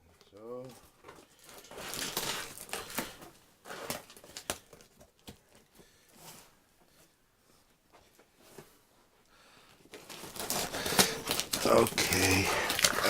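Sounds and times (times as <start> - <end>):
packaging crinkling and tearing: 1.4 - 5.4, 9.9 - 13.0.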